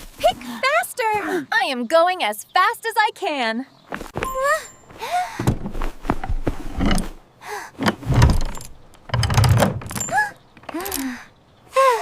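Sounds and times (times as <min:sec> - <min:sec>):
swooping squeaks: 0:07.9 - 0:11.2.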